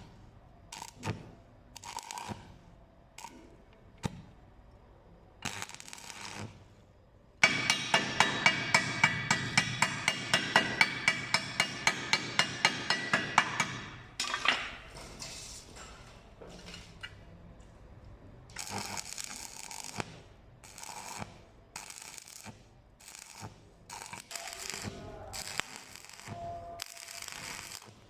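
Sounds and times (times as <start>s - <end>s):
rapid tapping on ringing metal: 7.4s - 13.9s.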